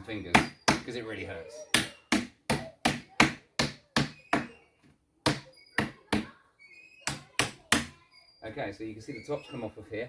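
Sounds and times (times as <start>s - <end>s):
hammer knocking on wood: 1.8s - 4.5s, 5.3s - 6.3s.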